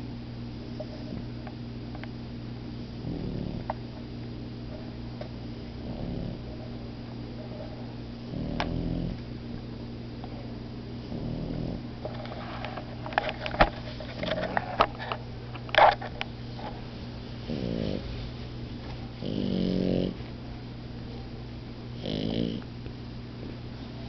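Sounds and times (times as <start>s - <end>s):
rattling snores: 3.0s - 3.7s, 5.8s - 6.4s, 8.3s - 9.2s, 11.1s - 11.8s, 17.5s - 18.0s, 19.2s - 20.2s, 22.0s - 22.6s
puppies snuffling and snorting: 11.0s - 18.6s.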